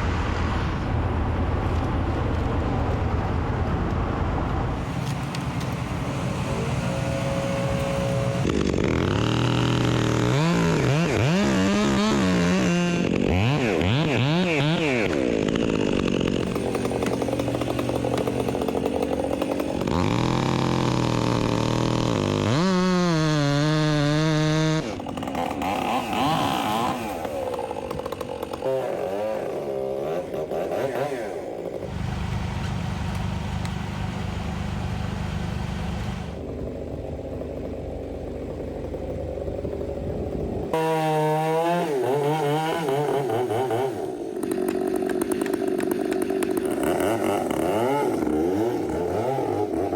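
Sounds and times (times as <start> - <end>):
chainsaws revving: 4.8 - 33.6, 34.5 - 49.9.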